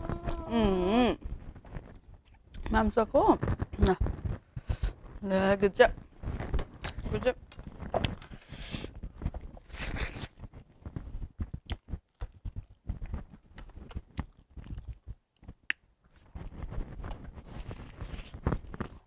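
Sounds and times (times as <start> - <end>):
chewing and mouth smacking: 9.1 - 19.0.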